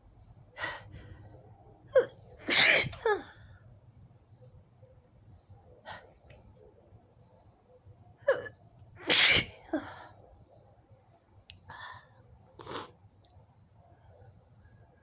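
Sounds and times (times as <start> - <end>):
woman sneezing: 2.0 - 3.2, 9.1 - 9.8.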